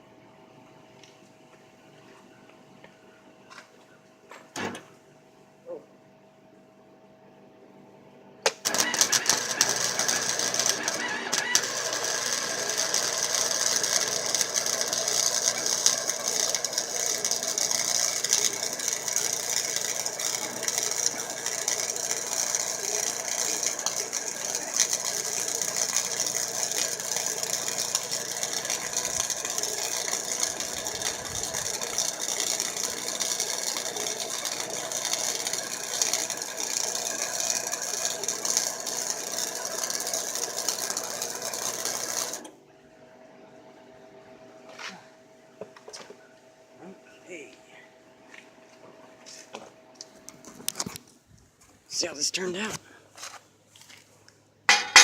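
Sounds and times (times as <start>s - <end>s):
wire welder arc crackling: 8.4s - 42.5s, 54.7s - 55.0s.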